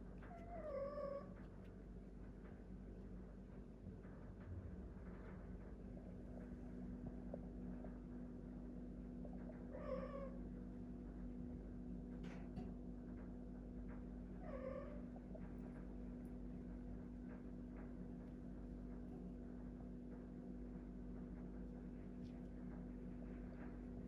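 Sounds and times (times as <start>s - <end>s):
steady low hum: 0.0s - 24.0s
cat meowing: 9.7s - 10.4s.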